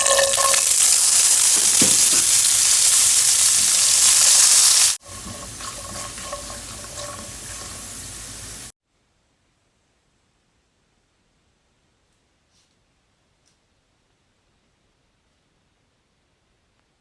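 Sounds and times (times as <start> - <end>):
food sizzling in hot oil: 0.0 - 8.8.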